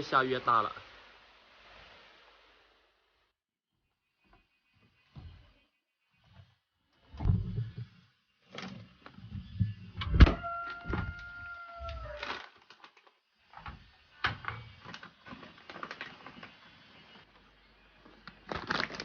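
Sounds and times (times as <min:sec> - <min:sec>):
long steady squeak: 0:08.6 - 0:12.5.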